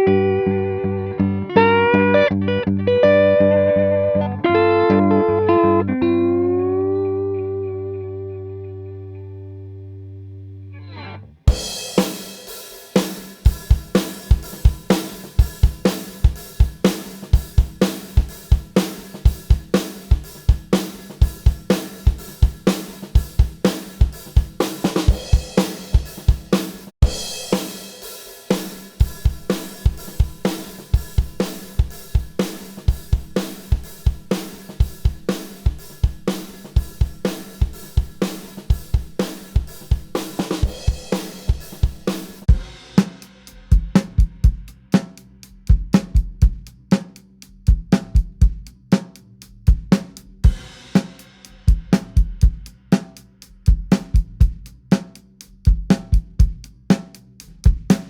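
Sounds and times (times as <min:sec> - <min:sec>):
sustained electric guitar chord: 0:00.0 - 0:10.3
drum kit playing a groove: 0:11.5 - 0:58.0.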